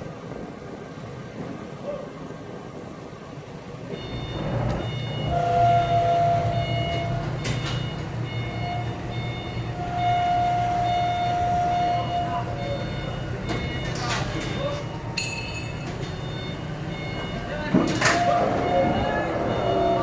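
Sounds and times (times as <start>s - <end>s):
vehicle engine rumbling: 0.0s - 20.0s
horn blasts: 3.9s - 13.9s, 16.5s - 20.0s
high beeps: 4.0s - 5.9s, 12.6s - 20.0s.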